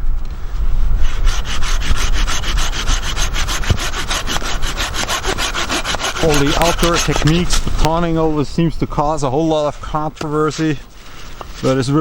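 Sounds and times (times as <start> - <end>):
saw cutting through wood: 1.0 - 8.0.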